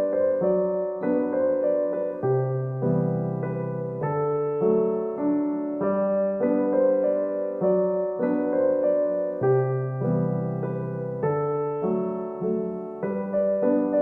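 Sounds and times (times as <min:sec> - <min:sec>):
electric piano melody: 0:00.0 - 0:14.0.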